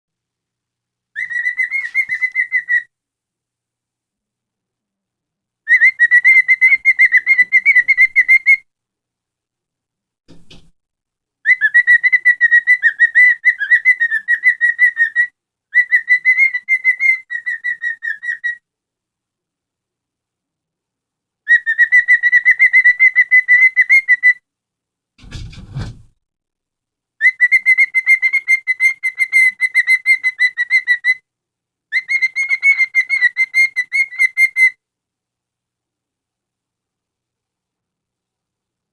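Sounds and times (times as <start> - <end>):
cockatiel chirping: 1.2 - 2.9, 5.7 - 8.6, 11.4 - 18.6, 21.5 - 24.4, 27.2 - 31.2, 31.9 - 34.8
low bump or rustle: 25.2 - 26.2.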